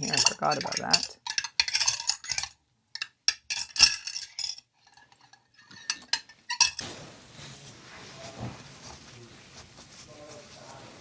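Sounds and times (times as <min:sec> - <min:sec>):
metal screws clinking: 0:00.0 - 0:06.8
faint steady hiss: 0:02.6 - 0:11.0.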